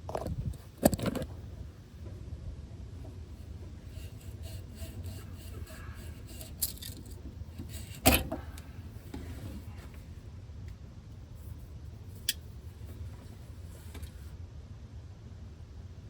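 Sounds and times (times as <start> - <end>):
hand tools clinking and scraping: 3.3 - 9.9.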